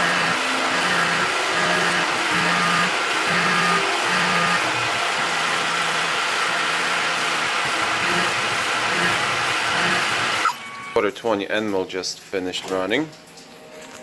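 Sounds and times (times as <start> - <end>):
milling machine cutting steel: 0.0 - 11.0
faint background music: 11.0 - 14.0.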